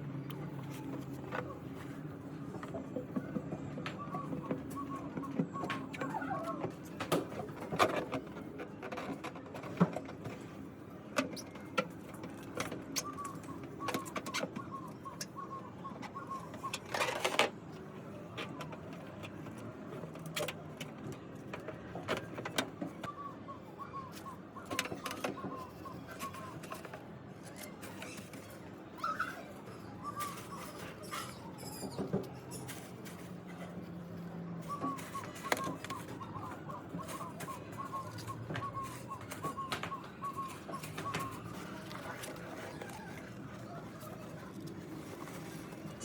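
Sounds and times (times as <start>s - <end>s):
bird calling wavering notes: 13.0s - 17.0s, 34.6s - 44.2s.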